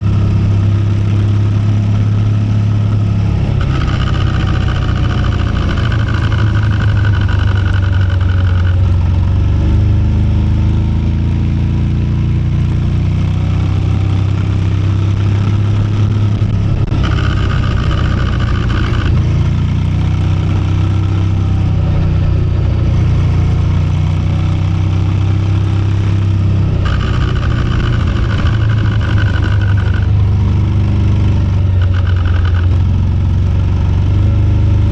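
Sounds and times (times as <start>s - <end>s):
motorcycle engine drone: 0.0s - 34.9s
high-pitched chain noise: 3.6s - 8.8s, 16.9s - 19.1s, 26.8s - 30.1s.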